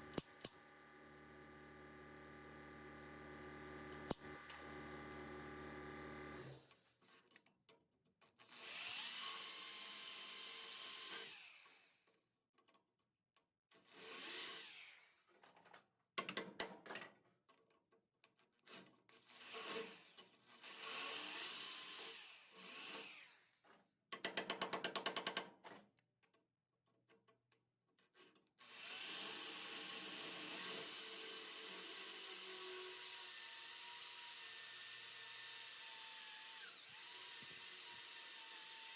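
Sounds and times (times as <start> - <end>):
power tool on sheet metal: 0.0 - 6.7, 8.6 - 12.0, 13.9 - 15.2, 19.3 - 23.6, 28.6 - 38.9.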